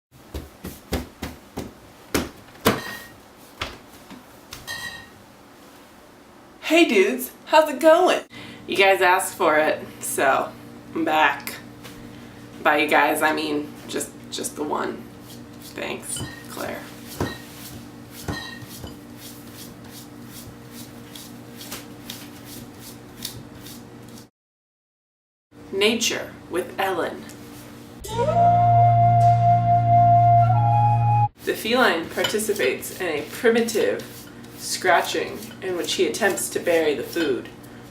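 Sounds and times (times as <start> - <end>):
low hum: 28.0 - 31.4.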